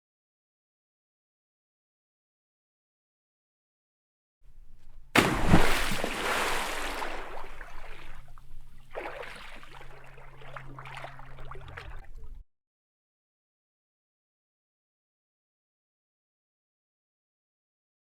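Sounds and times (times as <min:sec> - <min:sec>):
water dripping: 0:04.7 - 0:12.4
water splashing into a bowl: 0:05.2 - 0:12.3.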